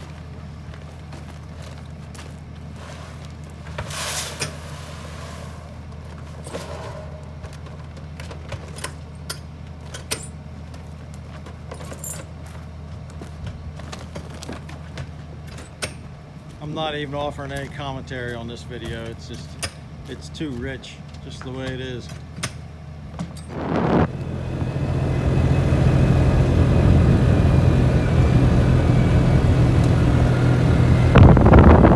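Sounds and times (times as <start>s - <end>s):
vehicle engine droning: 5.5s - 9.8s, 23.4s - 31.9s.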